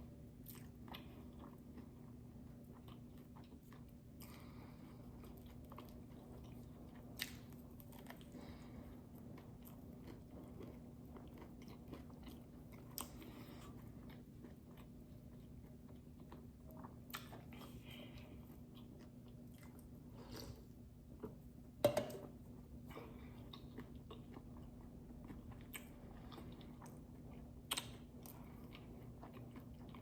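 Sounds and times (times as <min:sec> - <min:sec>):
chewing with crunchy bites: 0:00.0 - 0:21.8, 0:22.5 - 0:30.0
steady low hum: 0:00.0 - 0:30.0.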